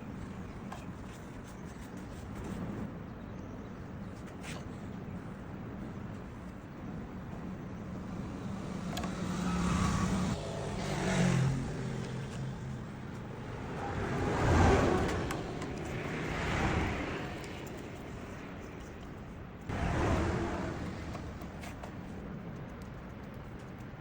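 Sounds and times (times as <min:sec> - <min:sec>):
low steady engine hum: 0:00.0 - 0:24.0
motor vehicle engine: 0:07.4 - 0:22.6.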